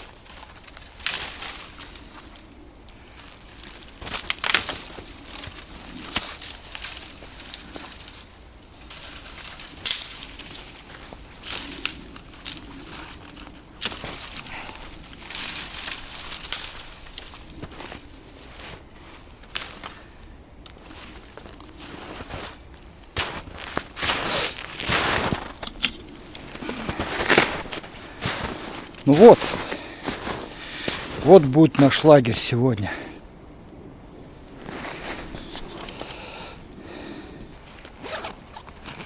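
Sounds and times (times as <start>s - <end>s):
footsteps crunching in snow: 3.2s - 20.1s, 20.8s - 33.0s, 34.4s - 35.8s.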